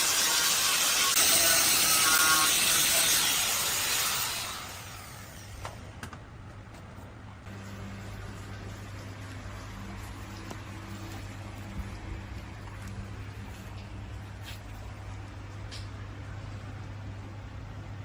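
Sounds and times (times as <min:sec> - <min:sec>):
loud steady hiss: 0:00.0 - 0:05.6
low steady hum: 0:05.7 - 0:18.0.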